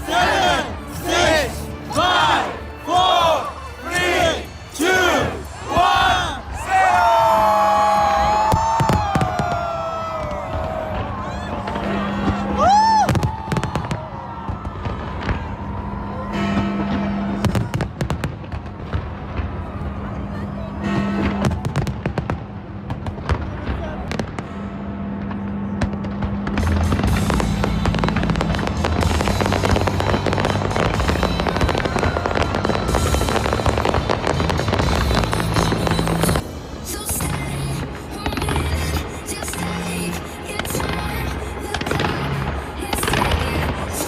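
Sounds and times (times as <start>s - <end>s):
loud music: 0.0s - 8.5s, 26.4s - 44.0s
fireworks bangs: 2.9s - 44.0s.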